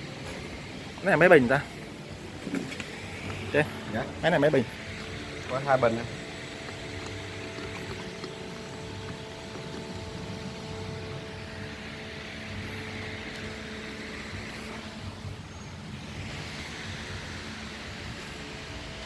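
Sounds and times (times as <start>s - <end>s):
diesel engine rumbling: 0.0s - 19.0s
faint steady whine: 0.0s - 19.0s.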